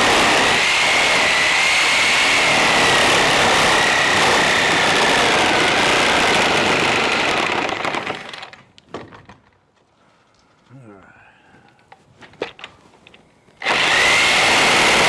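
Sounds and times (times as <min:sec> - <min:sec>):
electric saw whining: 0:00.0 - 0:08.6, 0:13.6 - 0:15.0.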